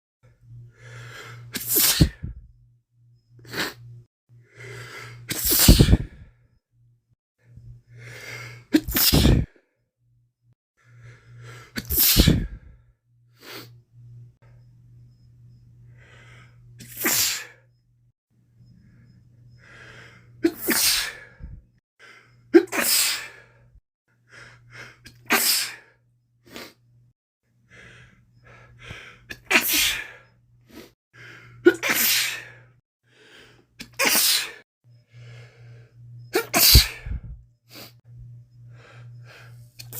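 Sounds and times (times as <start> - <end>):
man sneezing: 11.8 - 12.5, 22.6 - 23.3, 29.5 - 30.1, 31.7 - 32.5, 33.8 - 34.6, 36.4 - 37.1
faint low hum: 12.4 - 16.8, 17.5 - 20.4, 34.9 - 39.9
man sniffing: 36.4 - 38.0.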